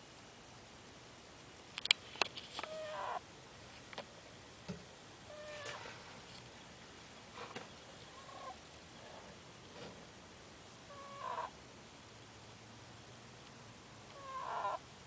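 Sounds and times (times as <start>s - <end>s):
ferret snoring squeakily: 14.2s - 14.8s.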